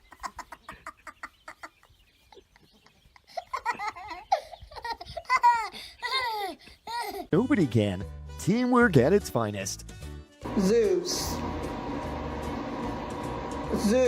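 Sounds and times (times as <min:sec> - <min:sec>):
baby laughing: 0:00.0 - 0:07.3.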